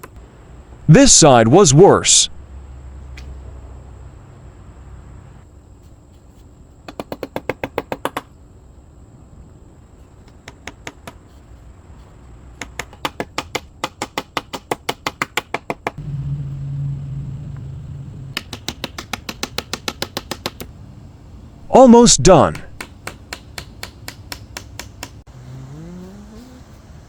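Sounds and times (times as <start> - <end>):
low steady hum: 16.0 - 25.3.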